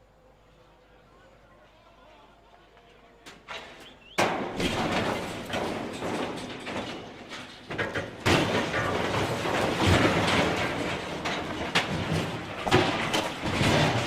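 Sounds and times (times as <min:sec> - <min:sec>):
rough clattering and banging: 0:03.4 - 0:14.0.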